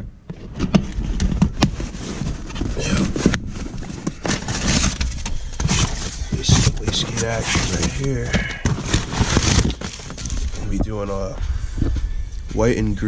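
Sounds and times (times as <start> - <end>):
packaging crinkling: 1.0 - 10.8.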